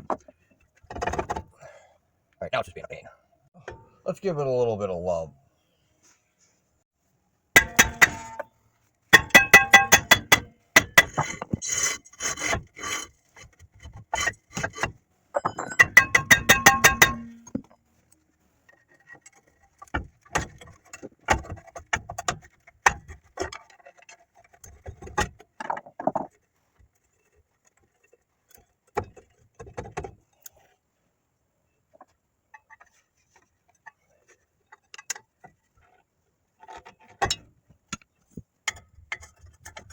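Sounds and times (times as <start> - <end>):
metal knocks and scrapes: 7.6 - 8.5, 9.1 - 17.9
metal tools clicking and tapping: 7.6 - 8.5, 9.1 - 11.6, 14.2 - 17.8.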